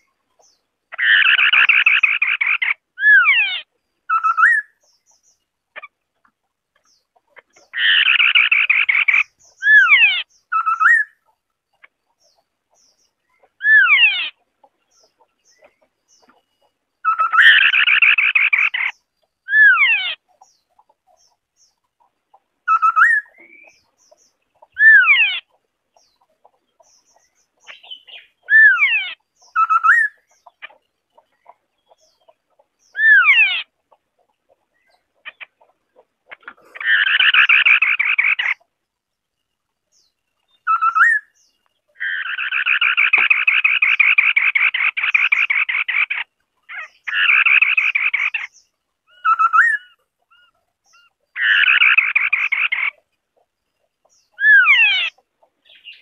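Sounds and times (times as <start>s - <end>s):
bird harsh chattering: 0.4s - 4.8s, 7.3s - 11.2s, 17.0s - 20.5s, 22.7s - 26.2s, 27.0s - 33.7s, 34.5s - 38.7s, 40.6s - 53.1s, 54.0s - 56.0s
bird singing whistled notes: 4.1s - 5.4s, 7.8s - 11.3s, 17.0s - 20.0s, 22.6s - 24.0s, 27.0s - 30.5s, 40.0s - 45.9s, 46.7s - 53.0s.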